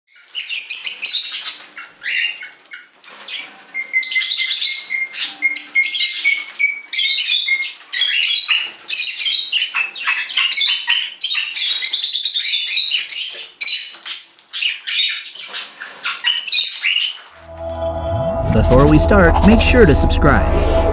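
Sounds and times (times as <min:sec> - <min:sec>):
held high bird note: 0:17.4 - 0:20.9.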